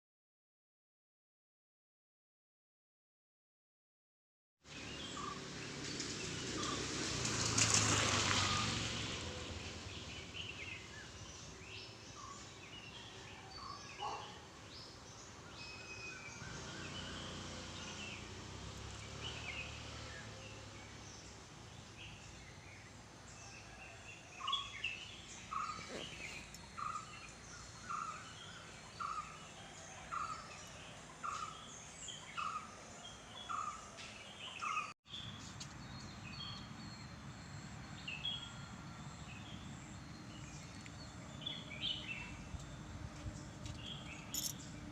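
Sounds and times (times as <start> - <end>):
birds chirping and calling: 10.4 - 18.2, 24.4 - 34.9, 43.6 - 44.8.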